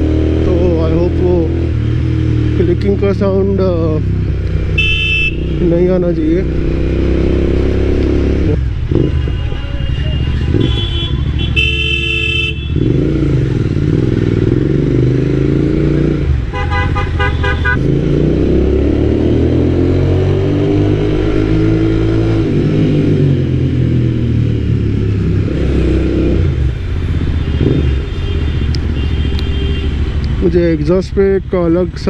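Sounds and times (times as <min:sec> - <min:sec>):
motorcycle engine revving: 0:00.0 - 0:32.0
vehicle horn beeps: 0:04.8 - 0:05.6, 0:09.0 - 0:12.9, 0:16.6 - 0:17.8, 0:27.4 - 0:30.0.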